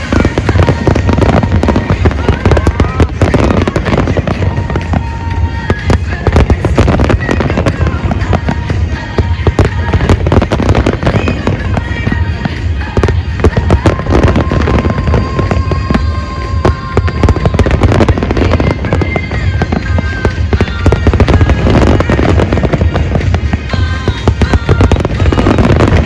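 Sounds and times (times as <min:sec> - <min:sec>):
fireworks bangs and crackling: 0:00.0 - 0:26.0
music playing: 0:00.0 - 0:26.0.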